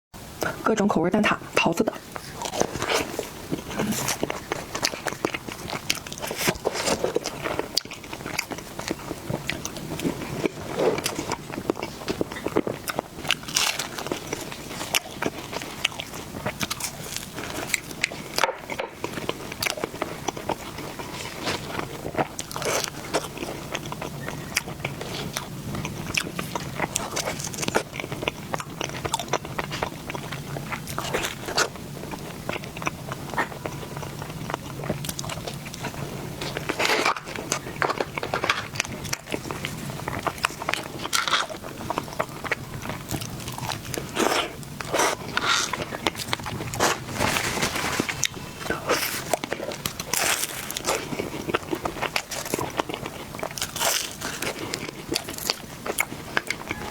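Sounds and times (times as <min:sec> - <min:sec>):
crisp pastry chewing crunches: 0:02.0 - 0:56.9.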